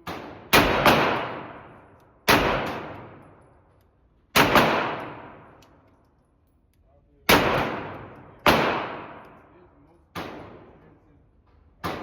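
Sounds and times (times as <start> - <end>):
pistol shots echoing: 0.0 - 3.4, 4.3 - 5.6, 7.3 - 9.5, 10.1 - 10.8.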